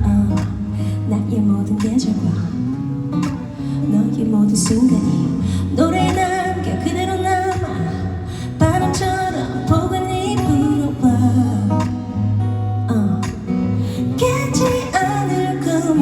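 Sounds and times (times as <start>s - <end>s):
bass line: 0.0s - 2.6s
plucked guitar: 0.0s - 16.0s
woman singing: 0.0s - 16.0s.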